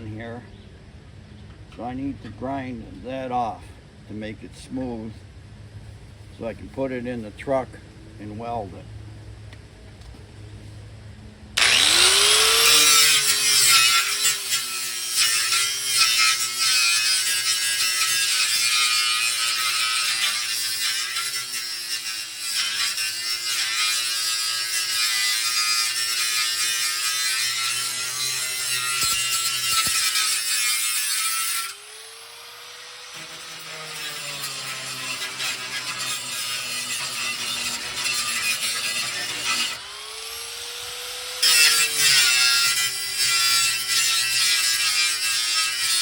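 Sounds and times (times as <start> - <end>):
angle grinder grinding metal: 11.6 - 46.0.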